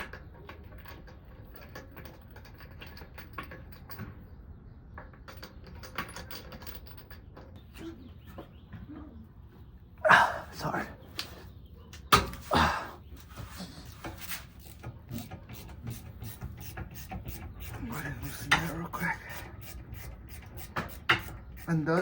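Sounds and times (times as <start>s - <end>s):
tools clicking and knocking: 13.3s - 22.0s.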